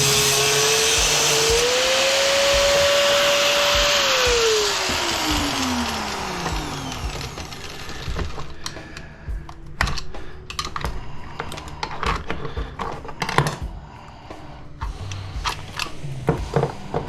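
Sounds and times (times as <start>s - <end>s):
power tool whining: 0.0s - 8.8s.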